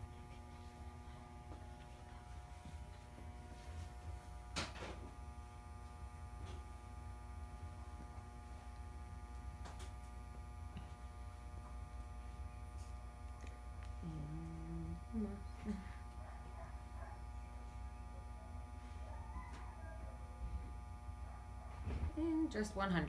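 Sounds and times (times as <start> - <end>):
low electrical hum: 0.0 - 23.0
low steady pitched tone: 14.0 - 15.9.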